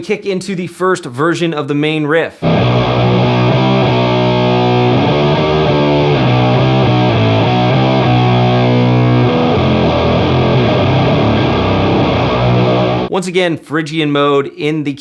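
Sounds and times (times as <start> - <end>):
distorted electric guitar riff: 2.4 - 13.1.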